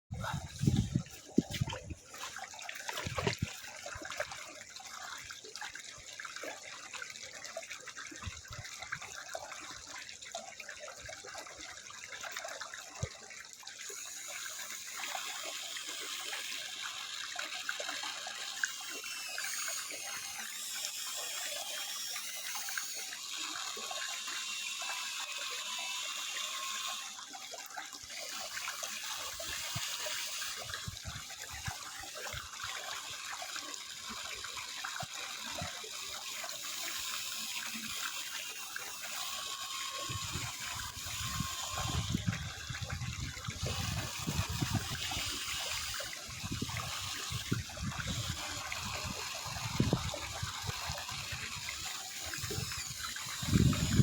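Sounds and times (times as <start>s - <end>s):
small electric motors whining: 0.1s - 54.0s.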